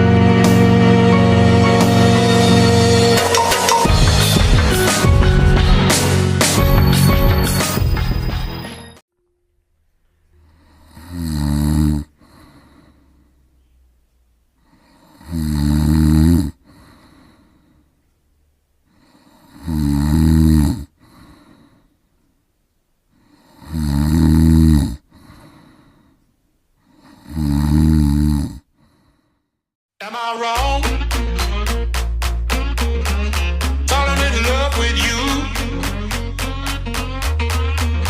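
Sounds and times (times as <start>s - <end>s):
person snoring: 10.4s - 13.4s, 14.6s - 17.8s, 18.9s - 21.9s, 23.2s - 26.1s, 26.8s - 29.2s
soft breath: 12.1s - 15.3s, 16.6s - 18.2s, 18.8s - 19.6s, 20.9s - 22.4s, 25.0s - 27.3s, 28.6s - 29.6s.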